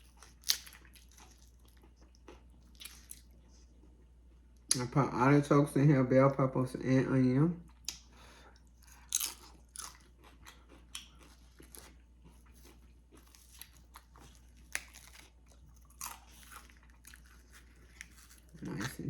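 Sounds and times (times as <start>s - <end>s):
crunching tortilla chips: 0.0s - 3.4s, 7.9s - 19.0s.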